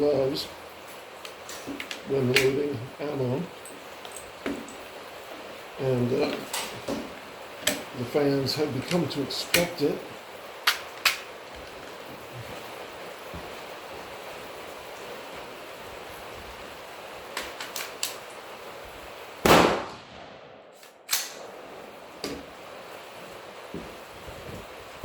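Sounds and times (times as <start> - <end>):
rifle gunshot: 19.4 - 21.3.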